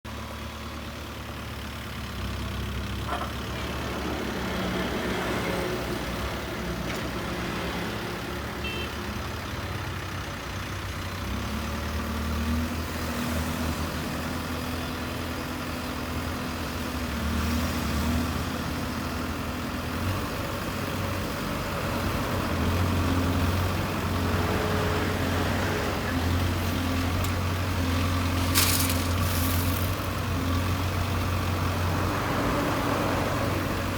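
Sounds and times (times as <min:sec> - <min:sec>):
diesel engine running: 0:18.4 - 0:33.9.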